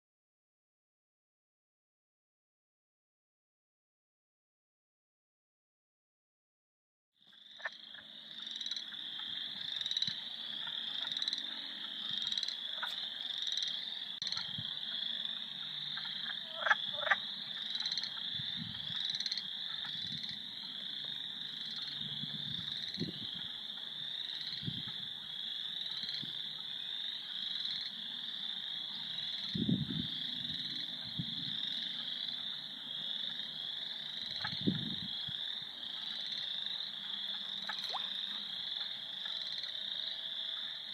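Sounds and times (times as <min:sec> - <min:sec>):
chorus of frogs calling: 0:07.3 - 0:40.9.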